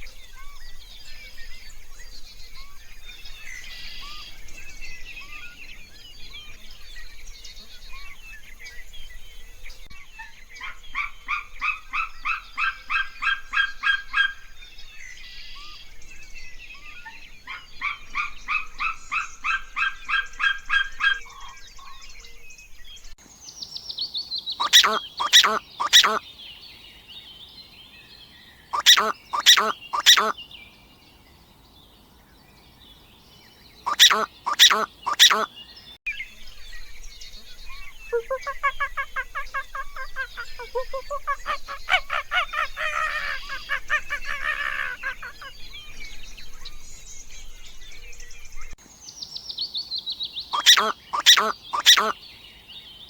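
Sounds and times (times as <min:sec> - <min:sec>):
bird chirping: 0:00.0 - 0:53.0
harsh bird calls: 0:24.4 - 0:26.4, 0:28.6 - 0:30.5, 0:33.7 - 0:36.0, 0:37.0 - 0:48.8, 0:50.4 - 0:53.0
falling bird whistle: 0:24.6 - 0:26.2.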